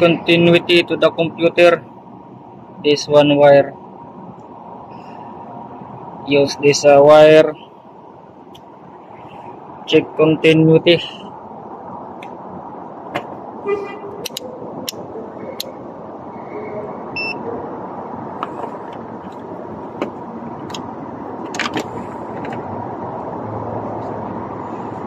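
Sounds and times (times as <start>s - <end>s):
background traffic noise: 0.0s - 25.0s
brief horn toot: 13.6s - 14.1s.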